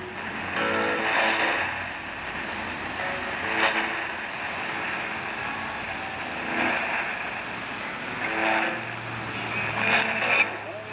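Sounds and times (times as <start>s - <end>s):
low steady hum: 0.0s - 10.9s
radio hiss and static: 0.0s - 10.9s
traditional singing on radio: 3.0s - 10.9s.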